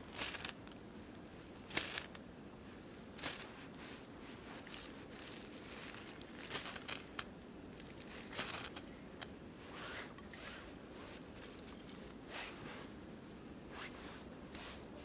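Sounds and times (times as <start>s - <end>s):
faint steady hiss: 0.0s - 15.0s
bark and sticks rustling: 9.8s - 15.0s.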